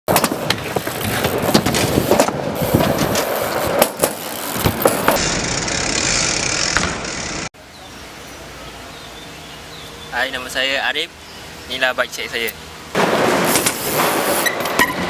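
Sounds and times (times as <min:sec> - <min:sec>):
bike tyres rolling with clacks: 0:00.1 - 0:07.5, 0:13.0 - 0:15.0.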